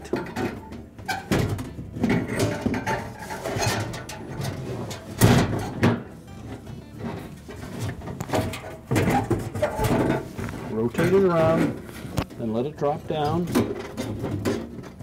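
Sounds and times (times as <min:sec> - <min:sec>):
plastic cover scraping and knocking: 0:07.0 - 0:12.4, 0:13.4 - 0:15.0.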